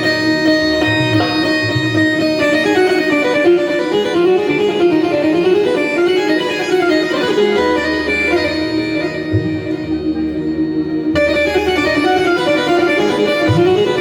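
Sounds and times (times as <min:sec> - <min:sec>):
held drone note: 0:00.0 - 0:14.0
synthesizer melody: 0:00.0 - 0:14.0
low bass notes: 0:07.8 - 0:14.0.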